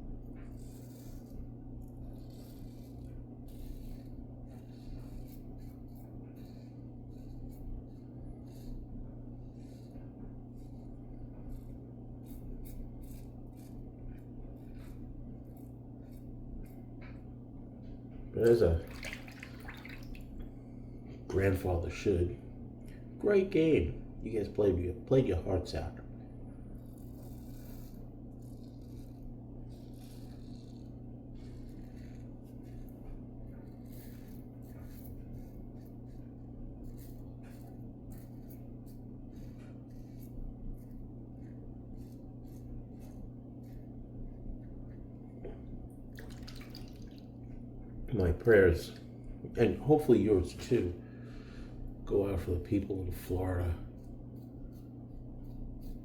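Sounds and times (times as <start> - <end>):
razor scraping stubble: 0.0 - 17.3, 26.5 - 45.4
steady low hum: 0.0 - 56.0.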